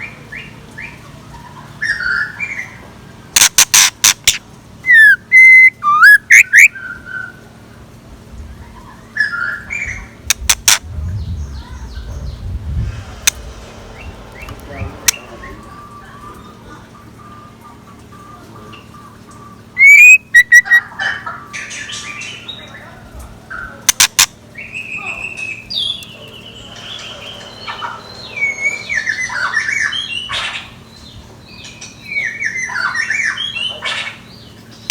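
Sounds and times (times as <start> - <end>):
sharp clicks: 3.4 - 4.4, 10.3 - 10.8, 23.9 - 24.4
bird chirping and whistling: 3.5 - 7.1, 15.1 - 20.8, 23.9 - 34.9.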